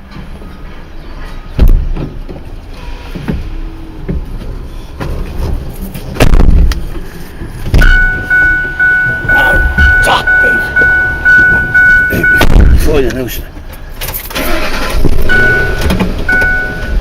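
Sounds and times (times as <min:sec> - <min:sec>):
vehicle rumble: 0:00.0 - 0:17.0
heavy thumps and knocks: 0:06.1 - 0:07.0, 0:07.6 - 0:10.1.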